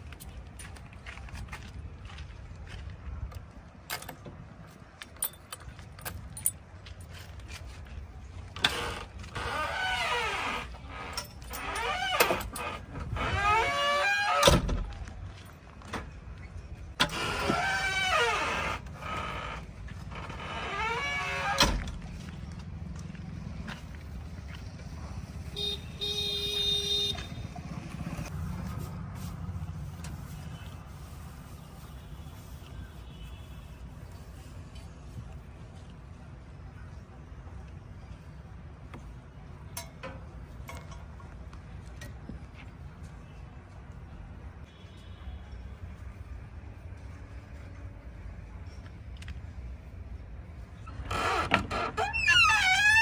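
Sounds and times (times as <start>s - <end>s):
vehicle horn honking: 25.5s - 27.5s.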